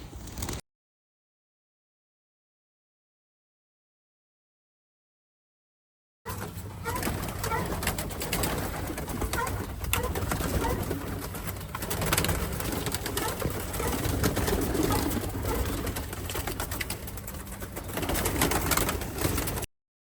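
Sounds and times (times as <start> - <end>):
pigeons cooing: 6.3 - 19.7.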